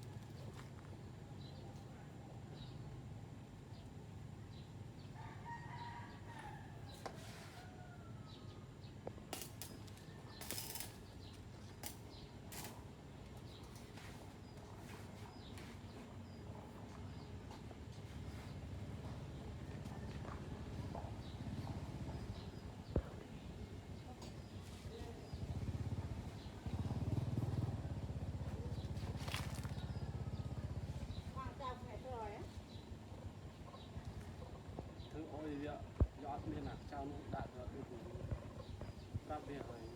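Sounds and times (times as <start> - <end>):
rooster crowing: 5.2 - 8.5
small engine running: 25.3 - 31.6.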